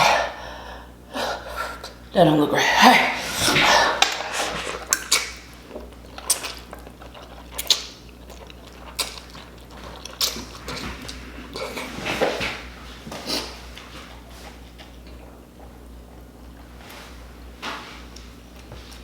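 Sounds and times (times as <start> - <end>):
low steady hum: 0.0 - 19.0
mouth noises eating noodles: 3.1 - 16.5.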